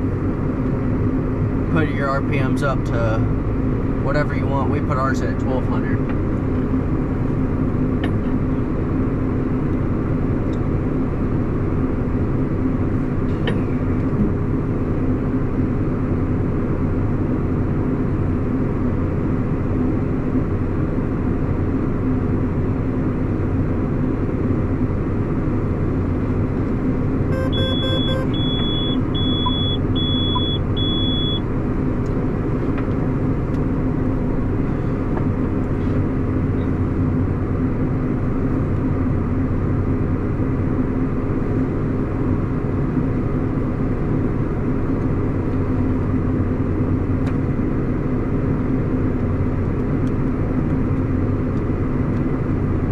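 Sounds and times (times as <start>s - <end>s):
tractor engine running: 0.0s - 52.9s
short high electronic beeps: 27.3s - 31.4s.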